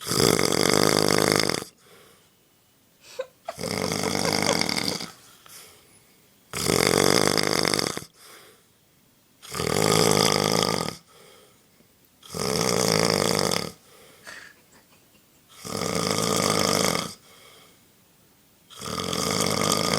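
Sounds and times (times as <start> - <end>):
loud snoring: 0.0 - 1.8, 3.5 - 5.2, 6.5 - 8.2, 9.4 - 11.1, 12.2 - 14.5, 15.6 - 17.2, 18.7 - 19.9.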